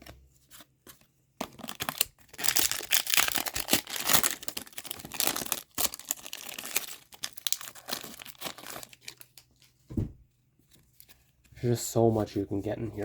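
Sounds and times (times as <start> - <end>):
wrapper crinkling and tearing: 1.4 - 9.8.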